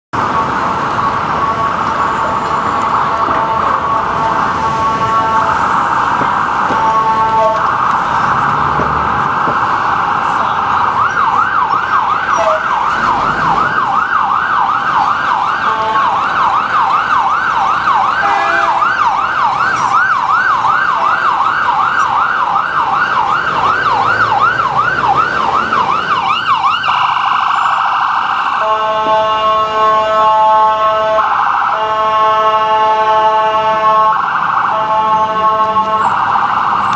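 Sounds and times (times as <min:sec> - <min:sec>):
ambulance siren warbling and yelping: 0:00.2 - 0:36.9
buzzing horn blast: 0:06.7 - 0:07.6, 0:18.2 - 0:18.8.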